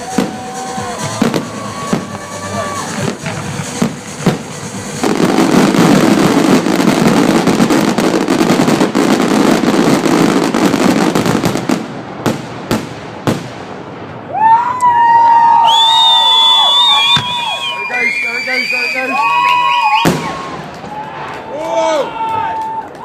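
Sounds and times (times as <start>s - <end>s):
onlookers shouting and whooping: 0.0s - 3.3s, 14.3s - 23.0s
fireworks bangs and crackling: 0.0s - 23.0s.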